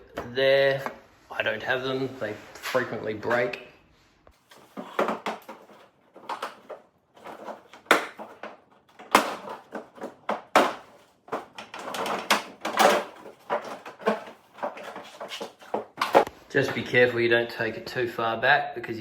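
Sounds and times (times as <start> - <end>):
plastic knocks and clatters: 4.3 - 17.0
plastic rattling and scraping: 4.3 - 17.2.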